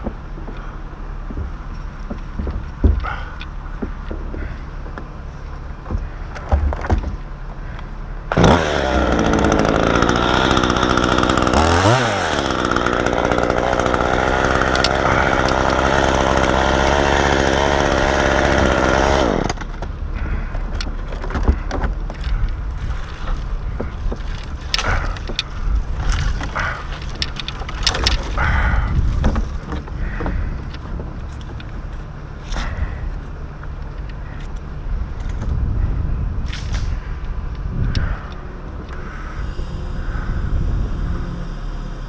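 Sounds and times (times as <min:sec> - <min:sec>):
low engine rumble: 0:00.0 - 0:42.0
chainsaw cutting wood: 0:08.3 - 0:20.4, 0:23.8 - 0:30.4, 0:39.0 - 0:42.0.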